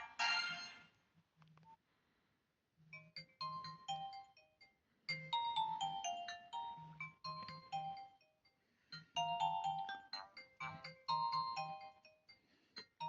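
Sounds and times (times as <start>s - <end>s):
phone ringtone chiming melody: 3.0s - 13.0s.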